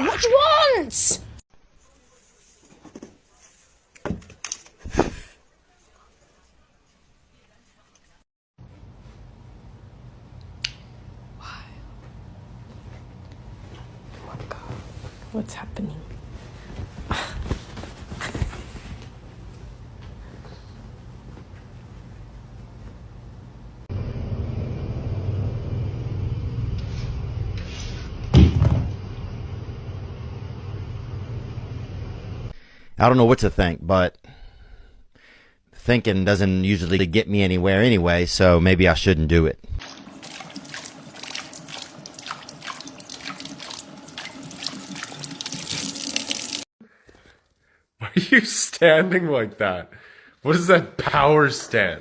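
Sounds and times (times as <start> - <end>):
loud thump: 28.3 - 29.1
water drips and spatters: 39.8 - 46.7
water running and splashing: 39.8 - 46.7.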